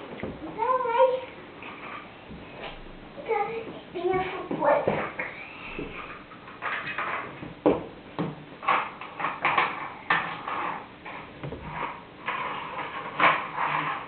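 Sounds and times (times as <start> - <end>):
toy cars clattering on track: 8.6 - 14.0.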